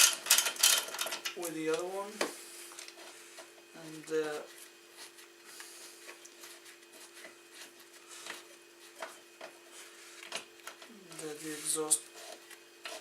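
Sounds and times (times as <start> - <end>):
wrenches clicking and scraping: 0.0 - 1.8
steady low hum: 0.0 - 13.0.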